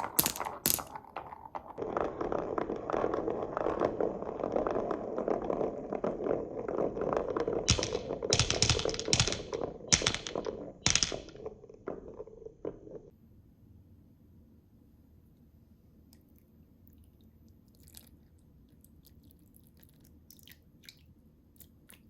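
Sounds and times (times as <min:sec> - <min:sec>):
marbles clacking on wood: 0:00.0 - 0:13.1
marbles rolling on wooden track: 0:00.0 - 0:13.1.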